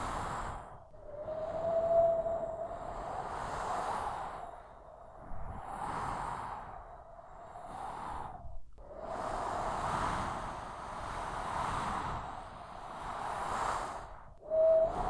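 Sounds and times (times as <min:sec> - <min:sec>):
strong wind gusting: 0:00.0 - 0:04.5, 0:11.1 - 0:15.0.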